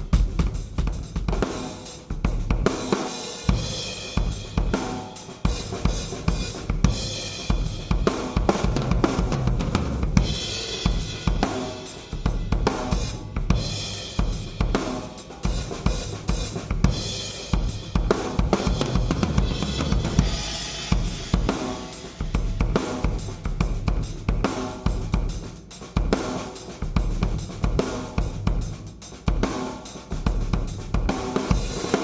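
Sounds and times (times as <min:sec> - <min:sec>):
drum kit playing: 0:00.0 - 0:32.0
cymbal crashes: 0:19.4 - 0:23.0.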